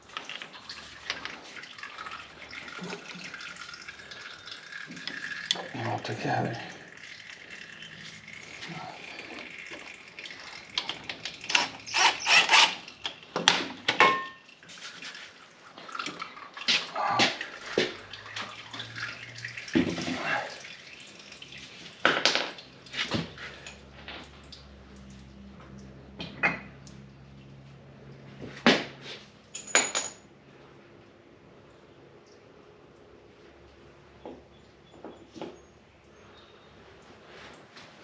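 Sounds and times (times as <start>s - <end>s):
oil dripping and trickling: 0.0s - 29.6s.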